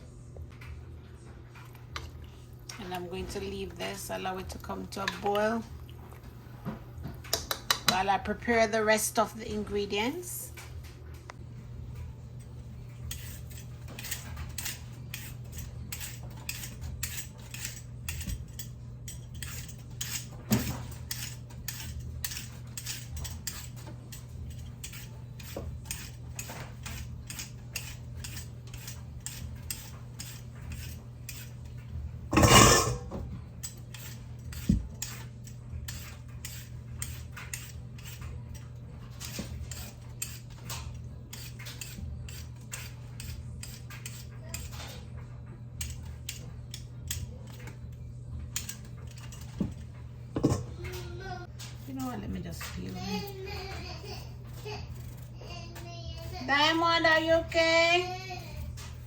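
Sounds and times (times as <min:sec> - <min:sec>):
utensils clattering: 0:12.0 - 0:45.1, 0:45.8 - 0:59.0.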